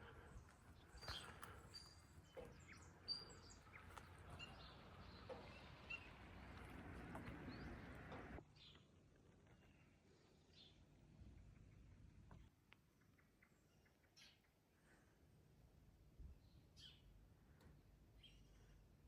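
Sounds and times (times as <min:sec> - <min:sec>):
faint outdoor background noise: 0:00.0 - 0:19.0
small bird chirps: 0:00.8 - 0:06.7.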